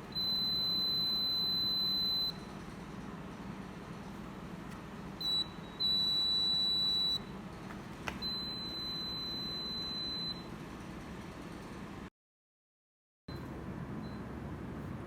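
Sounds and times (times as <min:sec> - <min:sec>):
alarm buzzer beeping: 0:00.2 - 0:02.4, 0:05.2 - 0:07.2, 0:08.2 - 0:10.5.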